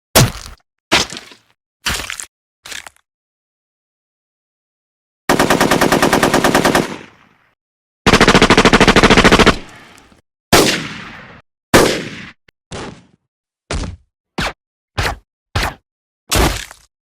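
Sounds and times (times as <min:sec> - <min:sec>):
cartoon automatic gunfire: 0:05.3 - 0:07.2, 0:08.1 - 0:09.7.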